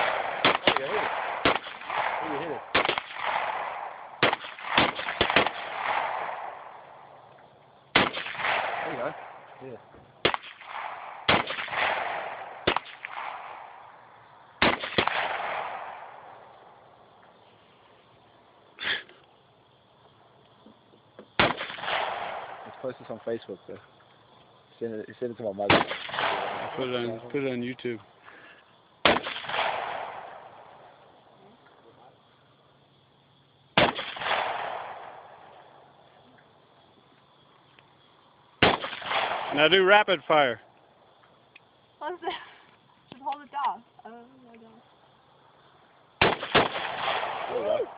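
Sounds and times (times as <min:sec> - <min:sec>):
gunshot echo: 0:00.0 - 0:07.1, 0:07.9 - 0:09.6, 0:10.2 - 0:13.9, 0:14.6 - 0:16.5, 0:21.4 - 0:22.9, 0:25.7 - 0:27.2, 0:29.0 - 0:30.9, 0:33.8 - 0:35.8, 0:38.6 - 0:39.8, 0:46.2 - 0:47.9
rifle shots: 0:00.0 - 0:07.2, 0:07.9 - 0:09.5, 0:10.2 - 0:13.9, 0:14.6 - 0:16.5, 0:21.4 - 0:22.8, 0:25.6 - 0:27.2, 0:29.0 - 0:30.9, 0:33.8 - 0:35.8, 0:38.6 - 0:39.9, 0:46.2 - 0:47.7.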